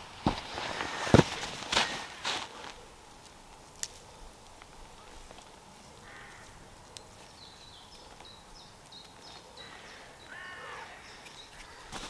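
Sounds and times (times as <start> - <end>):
bird cawing: 6.0 - 6.6, 9.5 - 12.0
high falling bird chirps: 9.0 - 12.0.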